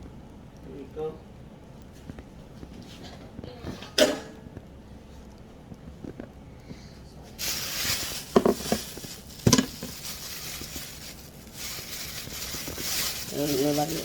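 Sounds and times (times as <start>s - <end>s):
steady kitchen hiss: 0.0s - 14.0s
pans or utensils clattering: 7.4s - 14.0s.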